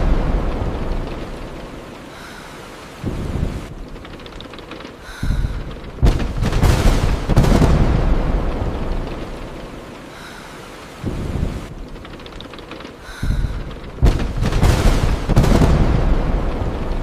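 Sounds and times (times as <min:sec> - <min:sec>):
rain on car windshield: 0:00.0 - 0:17.0
thunder rumbling: 0:00.0 - 0:17.0.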